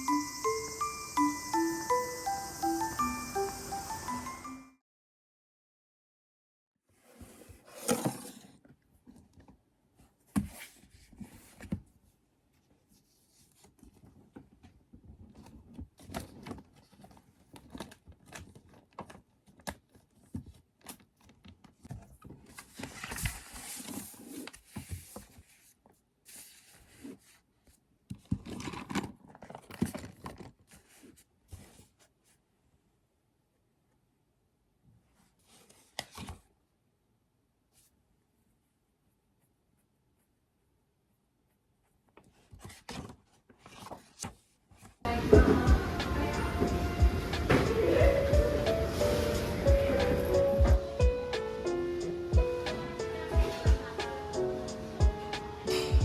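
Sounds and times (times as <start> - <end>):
paper rustling and scraping: 15.0 - 32.4, 35.1 - 36.5, 42.2 - 45.0.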